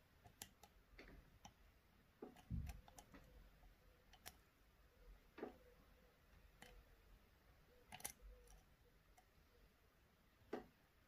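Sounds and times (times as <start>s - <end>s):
lock pick clicking on pins: 0.2s - 1.6s, 2.3s - 3.3s, 4.0s - 4.5s, 6.5s - 6.9s, 7.8s - 9.3s.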